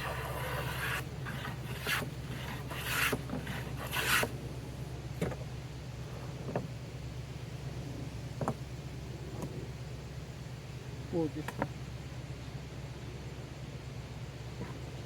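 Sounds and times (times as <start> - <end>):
hand tool rasping wood: 0.0 - 4.4
steady low hum: 0.0 - 15.0
light knocks: 8.4 - 8.6.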